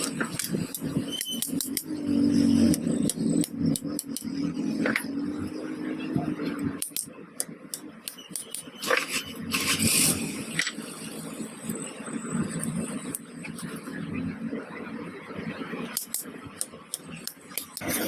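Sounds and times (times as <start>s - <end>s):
sharp taps and clicks: 0.0s - 1.9s, 2.6s - 5.1s, 6.6s - 8.7s, 15.9s - 18.0s.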